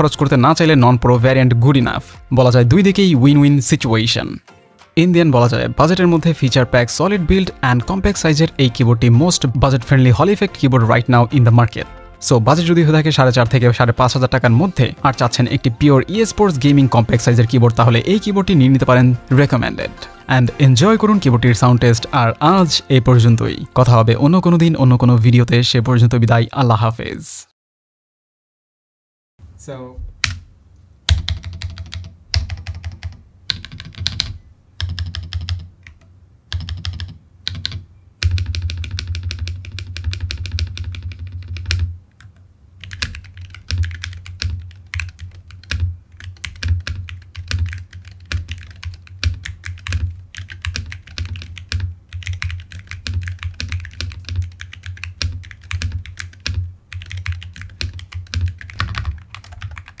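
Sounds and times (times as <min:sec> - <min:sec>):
rapid keyboard keystrokes: 0:31.1 - 1:00.0.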